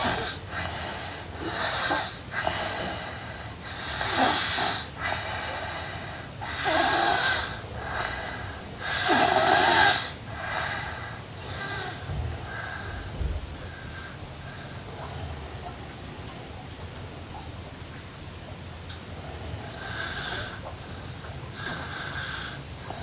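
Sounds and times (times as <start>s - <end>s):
girl snoring: 0.0s - 3.0s, 3.7s - 5.0s, 6.4s - 10.6s
soft breathing: 0.0s - 15.8s.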